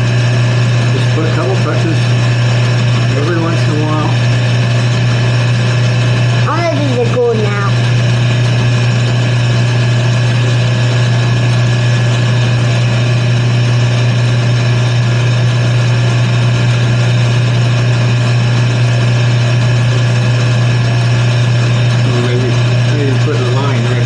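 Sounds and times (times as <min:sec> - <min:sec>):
wood lathe motor humming: 0:00.0 - 0:24.0.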